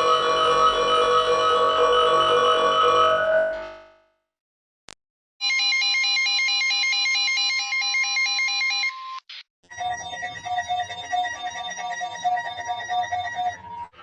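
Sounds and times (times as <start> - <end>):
two-pitch alarm tone: 0.0 - 3.8, 9.7 - 13.9.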